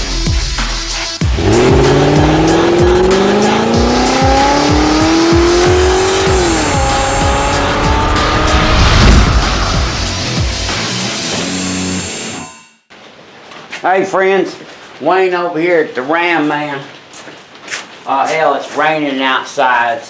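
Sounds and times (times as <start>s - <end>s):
intro music with steady beat: 0.0s - 11.9s
car engine accelerating: 1.2s - 11.3s.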